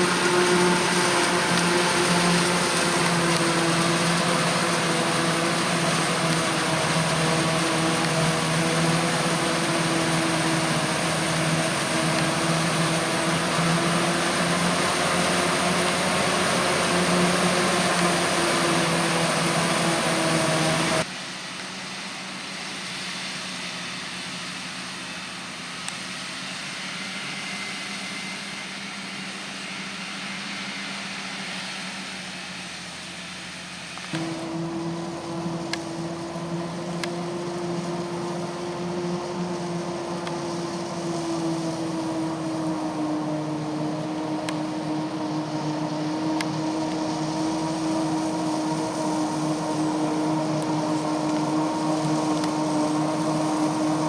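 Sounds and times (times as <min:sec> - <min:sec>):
diesel engines of harvesting machinery: 0:00.0 - 0:54.0.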